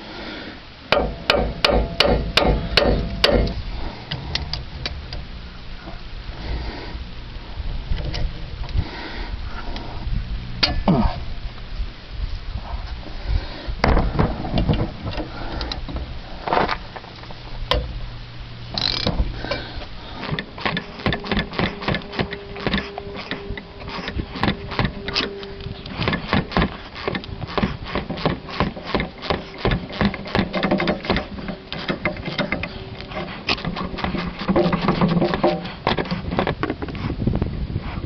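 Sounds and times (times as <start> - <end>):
hand ratchet clicking: 18.8 - 19.6, 20.2 - 36.2.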